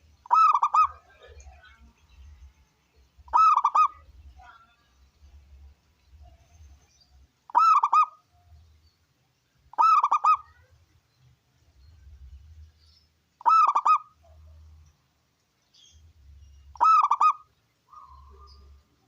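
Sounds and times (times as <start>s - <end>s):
dove cooing: 0.2s - 1.4s, 3.3s - 4.0s, 7.5s - 8.2s, 9.7s - 10.6s, 13.4s - 14.2s, 16.8s - 18.6s.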